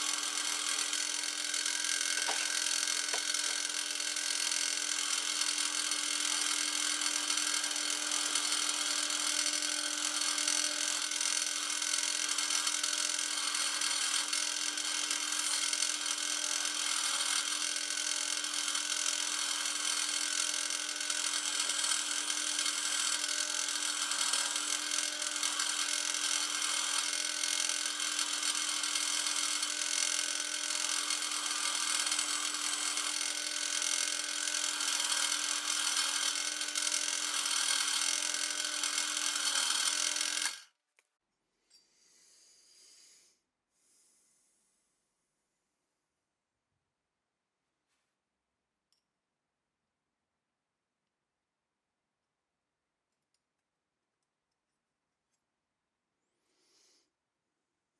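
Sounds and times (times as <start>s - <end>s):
power tool whirring: 0.0s - 40.7s.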